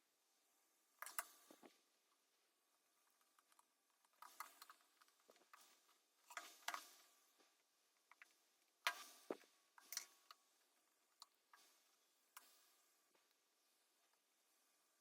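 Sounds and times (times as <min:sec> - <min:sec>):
plastic parts clicking and knocking: 0:01.0 - 0:01.8, 0:03.0 - 0:10.5.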